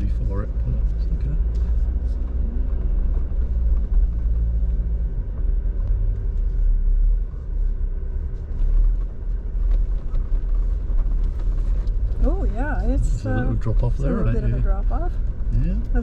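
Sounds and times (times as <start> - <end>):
engine low rumble from cabin: 0.0 - 16.0.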